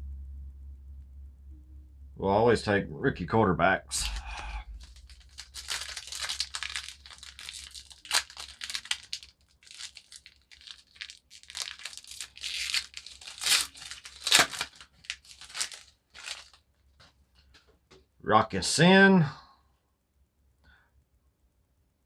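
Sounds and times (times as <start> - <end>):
foil wrapper tearing and crinkling: 4.0 - 16.6.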